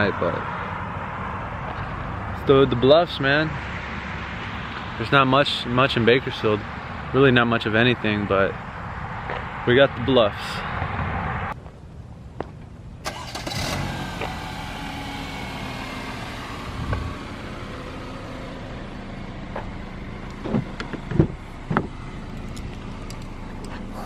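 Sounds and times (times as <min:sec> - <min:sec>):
car engine running: 0:13.1 - 0:24.0.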